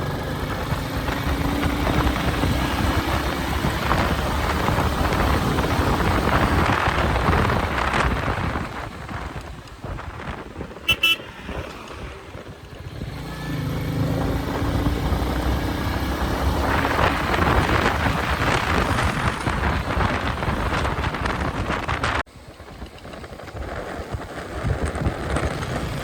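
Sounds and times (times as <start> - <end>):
motorcycle engine running: 0.0 - 26.0
rushing wind noise: 0.0 - 26.0
vehicle horn tooting: 10.8 - 11.8.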